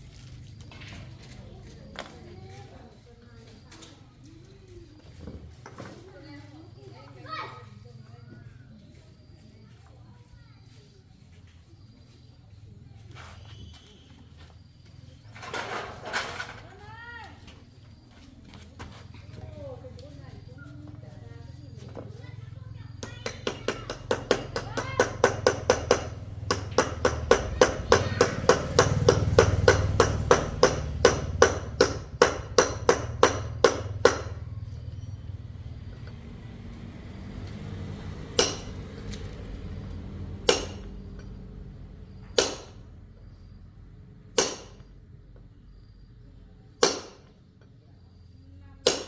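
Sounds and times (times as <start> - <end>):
hammer blows on metal: 38.4 - 38.8, 40.5 - 40.9, 44.4 - 44.8.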